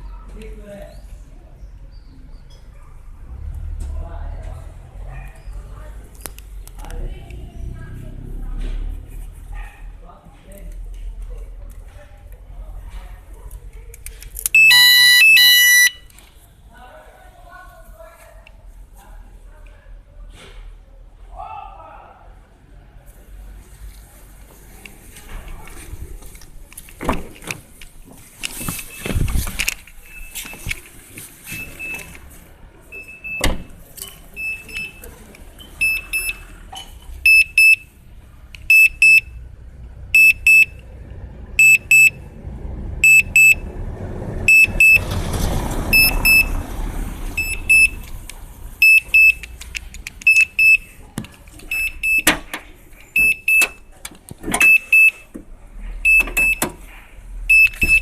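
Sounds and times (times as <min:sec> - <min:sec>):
car warning beeps: 0:14.6 - 0:16.1, 0:30.0 - 0:30.7, 0:31.5 - 0:32.1, 0:32.9 - 0:38.0, 0:38.6 - 0:39.4, 0:40.1 - 0:40.8, 0:41.6 - 0:42.2, 0:43.0 - 0:43.7, 0:44.5 - 0:45.0, 0:45.9 - 0:46.6, 0:47.4 - 0:48.1, 0:48.8 - 0:49.5, 0:50.2 - 0:51.0, 0:51.7 - 0:55.4, 0:56.0 - 0:56.8, 0:57.5 - 0:58.0.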